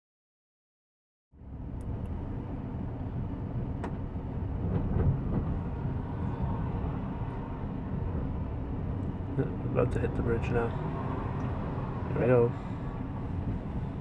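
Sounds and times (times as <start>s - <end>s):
train rumbling on track: 1.4s - 14.0s.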